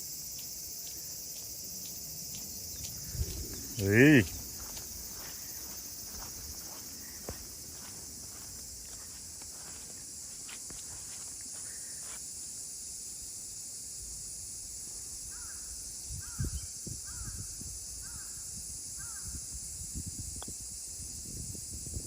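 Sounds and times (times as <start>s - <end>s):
steady high hiss: 0.0s - 22.0s
crow cawing: 15.3s - 15.7s.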